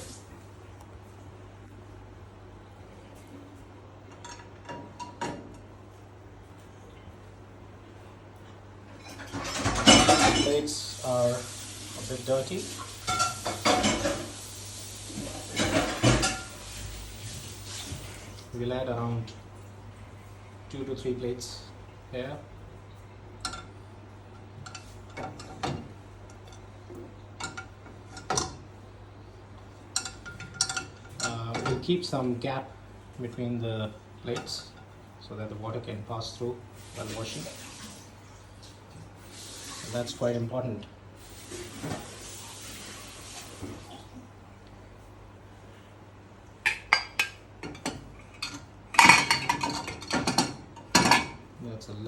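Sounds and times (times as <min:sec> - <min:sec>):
plates clinking in dishwasher rack: 0:09.0 - 0:10.8, 0:13.0 - 0:14.4, 0:15.2 - 0:16.6, 0:46.7 - 0:51.4.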